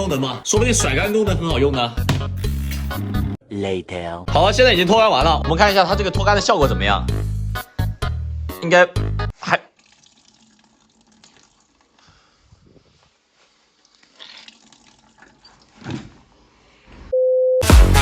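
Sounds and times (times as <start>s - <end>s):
water sloshing and dripping: 9.8s - 12.2s, 13.7s - 16.3s
short steady beep: 17.1s - 17.6s.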